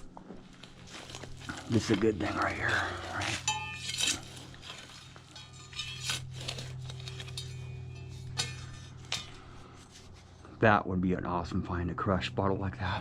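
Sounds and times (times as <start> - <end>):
digging tool clinking on glass: 1.7 - 9.4.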